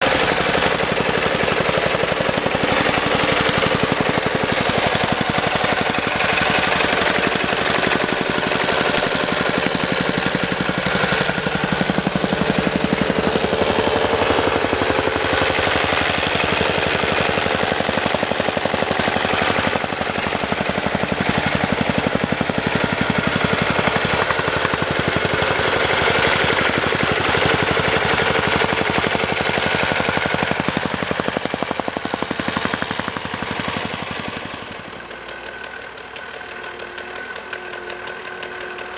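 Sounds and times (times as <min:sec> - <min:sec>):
engine running: 0:00.0 - 0:38.9
soil compactor rattling: 0:00.0 - 0:38.9.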